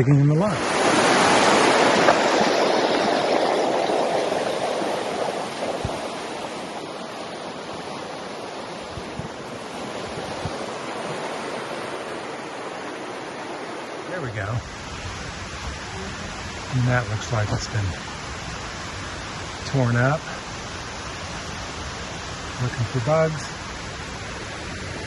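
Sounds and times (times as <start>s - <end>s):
rushing creek water: 0.0s - 25.0s.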